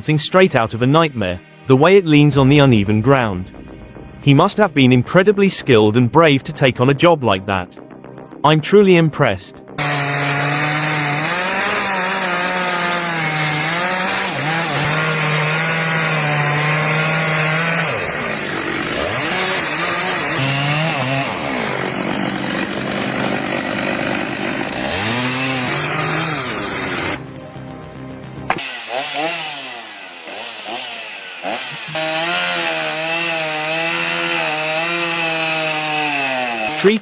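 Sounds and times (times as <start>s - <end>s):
chainsaw cutting under load: 9.8s - 37.0s.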